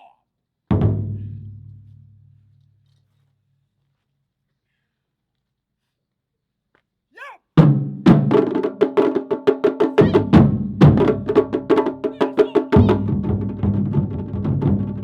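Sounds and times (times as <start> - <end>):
taiko drum ensemble: 0.7 - 1.6, 7.6 - 15.0
deeper drum: 0.7 - 2.4, 7.6 - 15.0.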